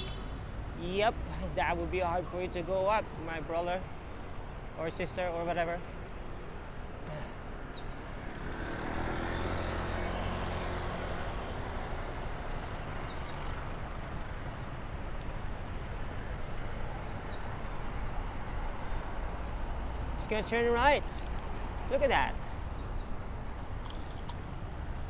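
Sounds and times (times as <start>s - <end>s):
passing vehicles and tyres: 0.0s - 25.0s
motor vehicle engine: 7.0s - 25.0s.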